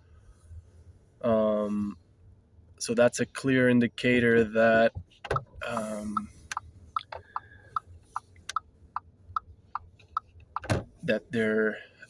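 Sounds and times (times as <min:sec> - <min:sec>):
turn signal ticking: 0:04.4 - 0:11.0.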